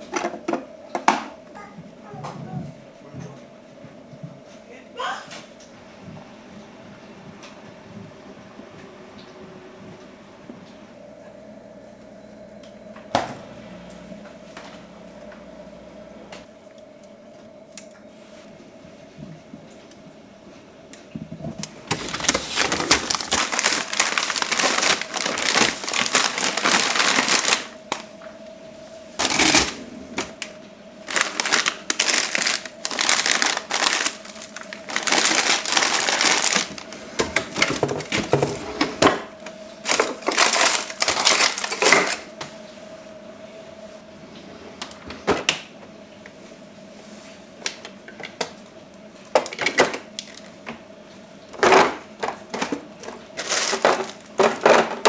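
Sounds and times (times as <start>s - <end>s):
faint steady hum: 0.0s - 55.0s
plastic containers clicking: 21.5s - 28.0s, 29.2s - 30.5s, 31.1s - 39.2s, 39.9s - 42.2s, 51.6s - 55.0s
plastic packaging crinkling: 21.5s - 28.2s, 29.2s - 42.4s, 51.6s - 55.0s.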